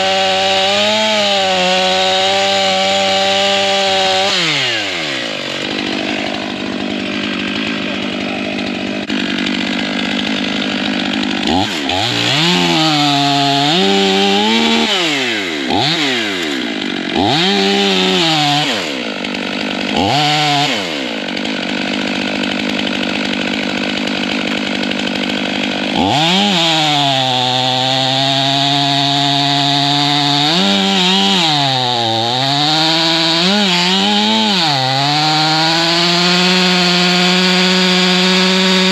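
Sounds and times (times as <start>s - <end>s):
chainsaw cutting log: 0.0s - 38.9s.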